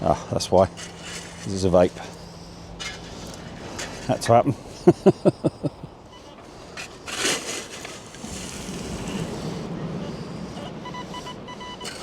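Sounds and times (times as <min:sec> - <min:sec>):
shingle crunching: 0:00.6 - 0:04.3, 0:06.6 - 0:09.5
metal detector beeps: 0:10.0 - 0:12.0.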